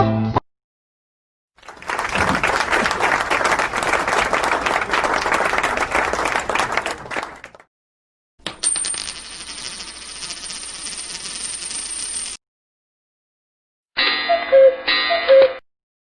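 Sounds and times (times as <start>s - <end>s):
crowd applause: 1.6s - 7.6s.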